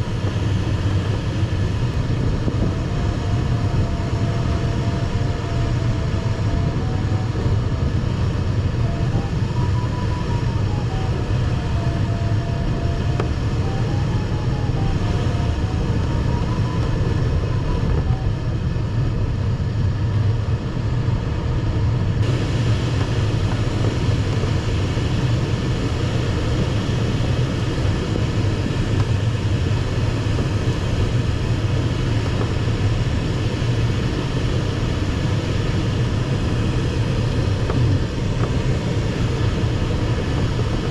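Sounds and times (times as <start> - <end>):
airflow hiss in cockpit: 22.2 - 40.9.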